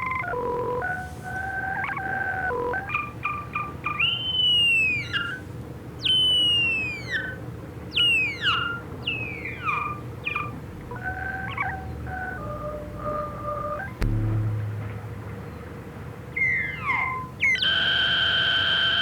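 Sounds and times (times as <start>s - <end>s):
synthesizer blips and gliding tones: 14.0s - 15.2s.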